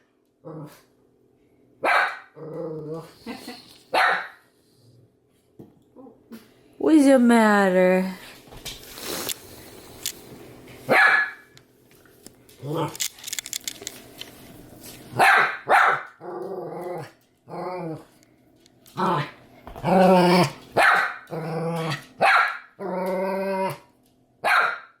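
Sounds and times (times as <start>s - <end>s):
dog barking: 1.8s - 2.4s, 3.9s - 4.4s, 10.9s - 11.4s, 15.2s - 16.1s, 20.8s - 21.2s, 22.2s - 22.7s, 24.4s - 25.0s.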